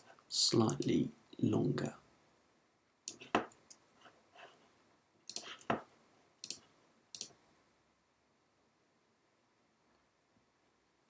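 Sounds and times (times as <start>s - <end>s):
mouse and keyboard clicks: 5.3s - 6.6s, 7.2s - 7.4s.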